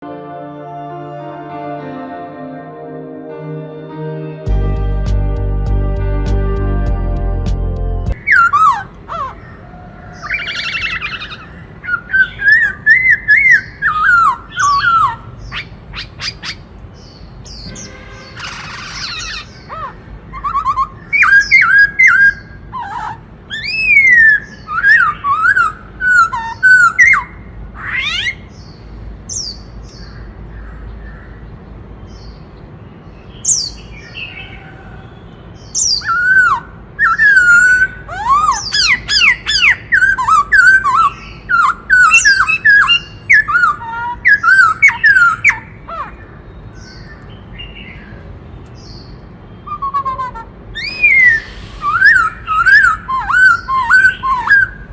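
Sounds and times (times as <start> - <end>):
bird singing whistled phrases: 35.8 - 45.6, 49.6 - 54.8.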